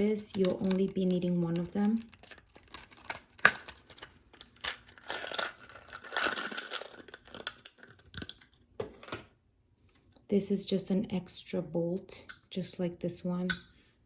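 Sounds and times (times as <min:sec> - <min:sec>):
plastic packaging rustling: 0:00.0 - 0:05.0
small metal nuts clinking: 0:02.2 - 0:08.3.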